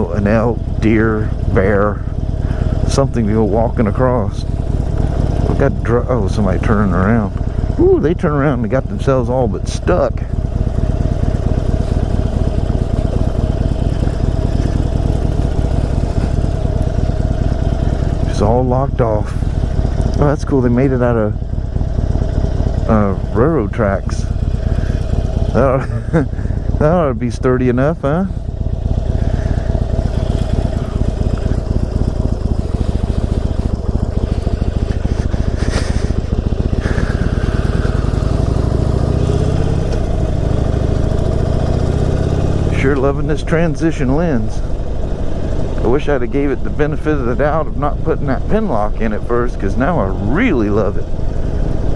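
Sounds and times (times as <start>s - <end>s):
motorcycle engine running: 0.0s - 51.9s.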